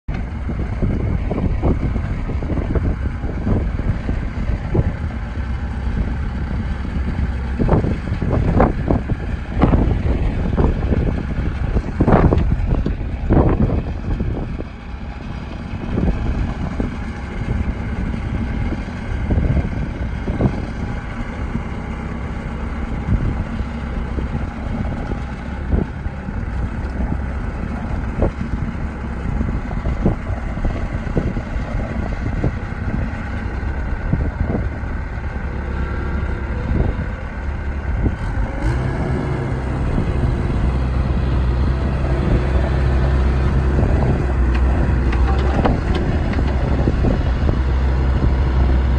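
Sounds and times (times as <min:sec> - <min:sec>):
excavator diesel engine running: 0:00.1 - 0:48.9
machine knocks and clanks: 0:44.4 - 0:47.7.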